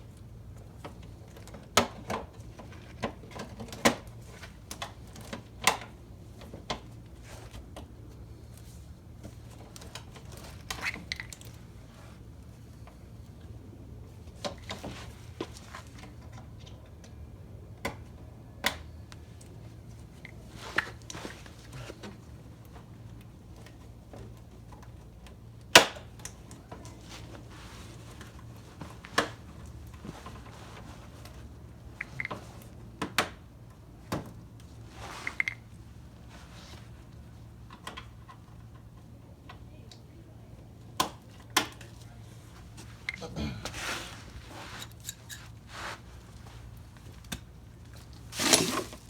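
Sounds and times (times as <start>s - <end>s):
small parts and tools clattering: 44.2s - 45.7s.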